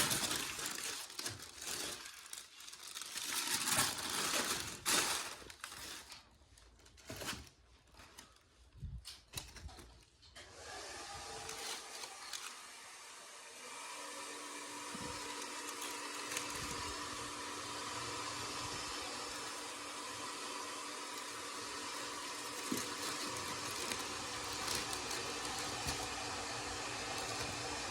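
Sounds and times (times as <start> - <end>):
small electric motor whirring: 14.8 - 27.9.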